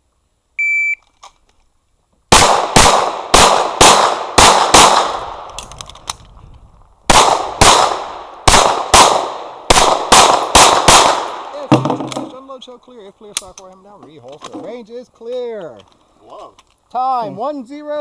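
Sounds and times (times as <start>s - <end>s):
pistol shots with echo: 2.3s - 5.5s, 7.1s - 11.8s.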